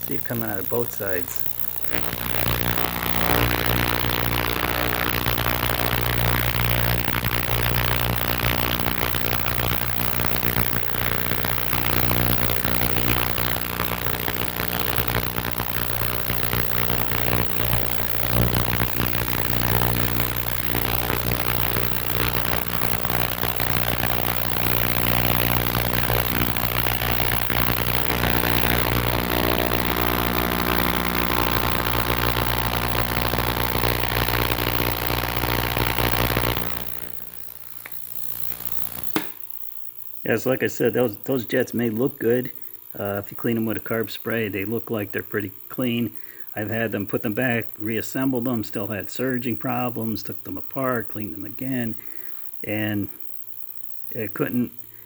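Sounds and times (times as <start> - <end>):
ultrasonic cleaner humming: 0.0 - 10.4, 11.2 - 39.4.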